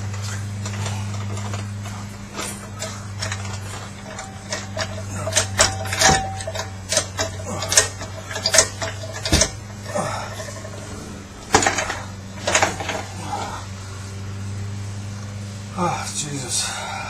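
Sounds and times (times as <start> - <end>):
steady low hum: 0.0 - 17.0
metal tools clinking: 0.1 - 13.6.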